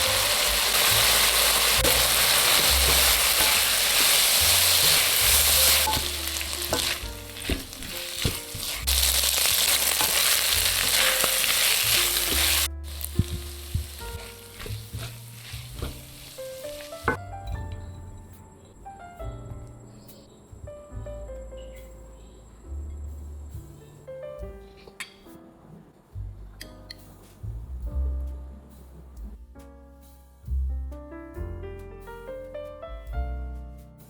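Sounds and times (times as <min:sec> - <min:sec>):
food sizzling in a hot pan: 0:00.0 - 0:17.2
utensil scraping and clinking pan: 0:01.8 - 0:13.3.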